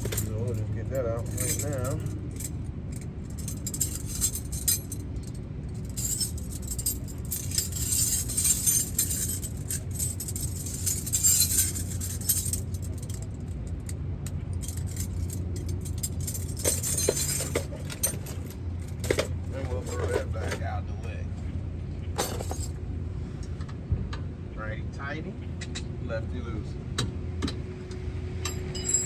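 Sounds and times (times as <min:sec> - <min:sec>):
metal hand tools clinking: 0:00.0 - 0:02.5, 0:03.3 - 0:05.0, 0:05.8 - 0:13.3, 0:14.6 - 0:20.6, 0:22.2 - 0:22.7, 0:28.5 - 0:29.0
steady low hum: 0:00.0 - 0:29.0.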